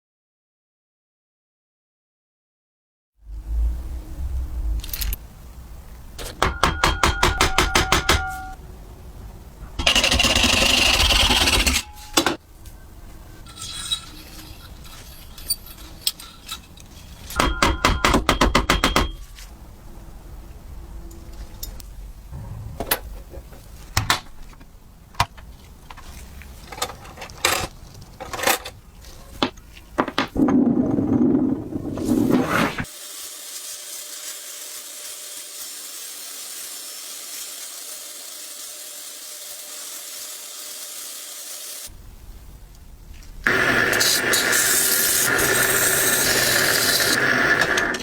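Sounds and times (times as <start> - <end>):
small metal parts clinking: 13.4 - 17.4.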